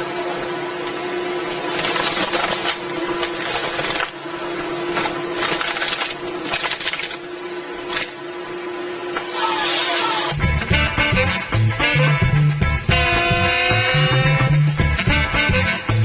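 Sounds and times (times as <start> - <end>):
tree-cutting machine humming: 0.0 - 16.0
harsh cutting bursts: 9.2 - 16.0.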